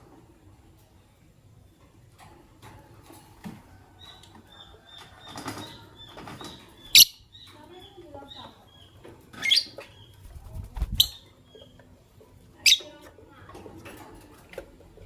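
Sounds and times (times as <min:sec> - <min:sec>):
lovebirds chirping: 0:04.0 - 0:12.0.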